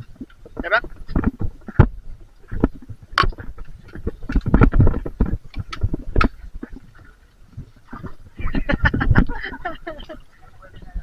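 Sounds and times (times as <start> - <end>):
rough rustling: 0.0 - 11.0
knocks and clatter: 0.2 - 6.9.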